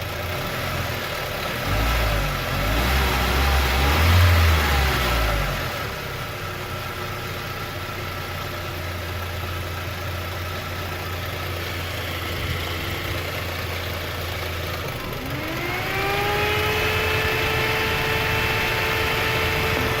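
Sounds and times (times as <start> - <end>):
engine whine: 11.1 - 20.0.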